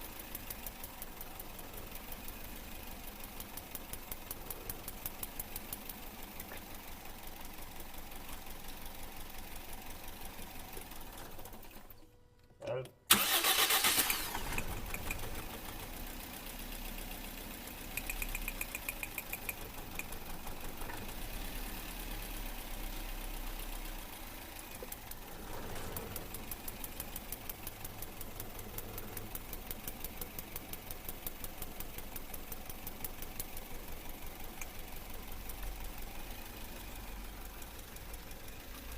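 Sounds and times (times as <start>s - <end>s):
engine idling with knock: 14.5s - 38.9s.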